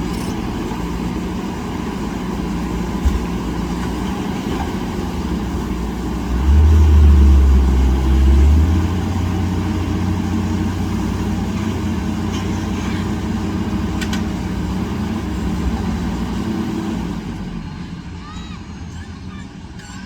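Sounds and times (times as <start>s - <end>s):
diesel engine rumbling: 0.0s - 20.0s.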